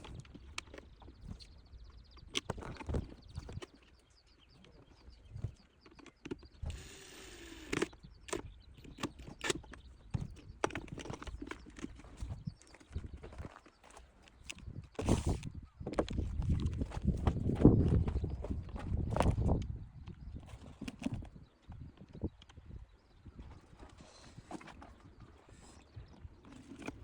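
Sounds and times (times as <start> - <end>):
clicks and taps of tools and plastic: 5.4 - 6.8, 7.5 - 17.4.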